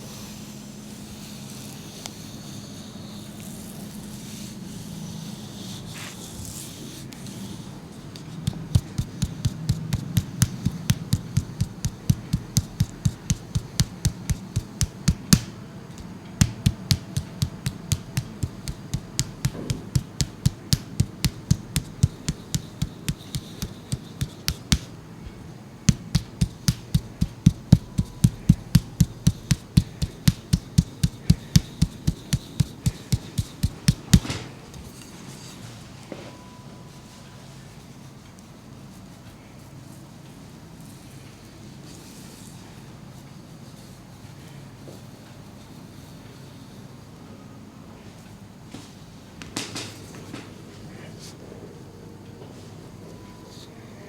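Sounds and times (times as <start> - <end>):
wooden mallet knocking on wooden wedge: 8.2 - 25.0, 25.9 - 34.5.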